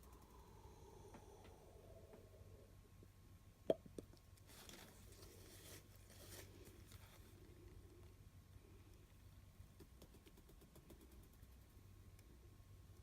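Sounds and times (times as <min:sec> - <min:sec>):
soft brushing: 0:04.5 - 0:07.5.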